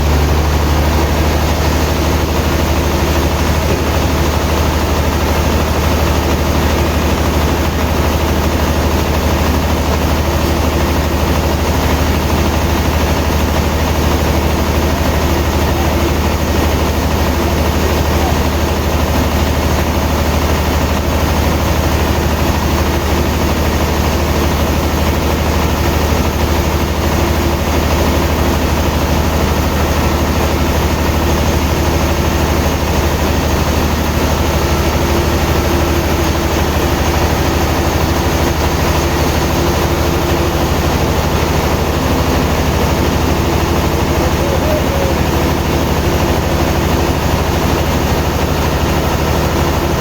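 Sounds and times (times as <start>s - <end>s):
sawmill machinery hum: 0.0s - 50.0s.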